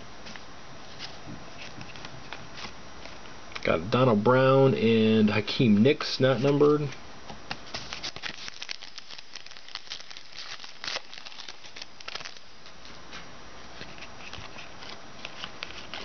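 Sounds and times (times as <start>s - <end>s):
card packs crinkling and clicking: 6.4s - 16.0s.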